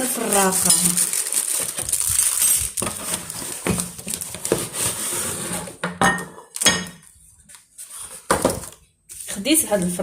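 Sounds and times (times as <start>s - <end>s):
kitchenware knocks and clatter: 5.7s - 7.0s, 8.3s - 8.7s.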